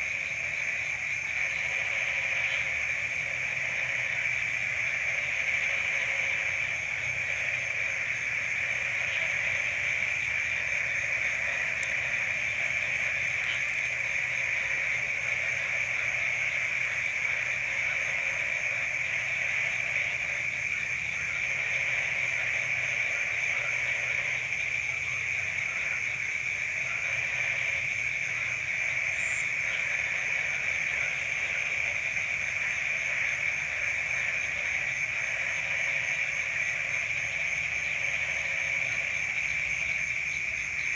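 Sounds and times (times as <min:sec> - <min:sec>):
frogs pulsing trill: 0:00.0 - 0:40.9
insects shrill drone: 0:26.8 - 0:40.9.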